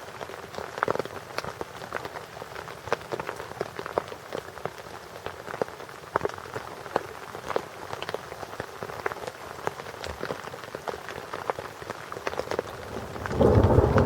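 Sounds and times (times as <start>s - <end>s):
rain: 0.0s - 14.0s
heavy raindrops ticking: 12.1s - 14.0s
low rumble of thunder: 12.6s - 14.0s.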